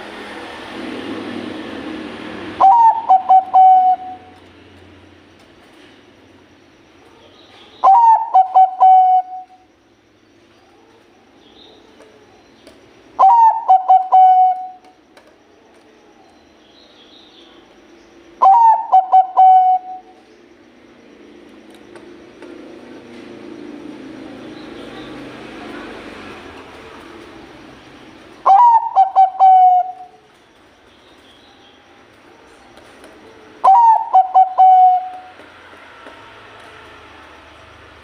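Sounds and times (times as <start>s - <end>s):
dove cooing: 2.5s - 4.4s, 7.8s - 9.6s, 13.2s - 14.9s, 18.4s - 20.2s, 28.4s - 30.2s, 33.5s - 35.4s.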